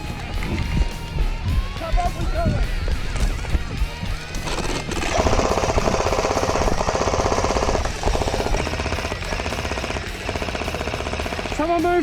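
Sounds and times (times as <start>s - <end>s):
electric toy machine gun firing: 4.4s - 12.0s.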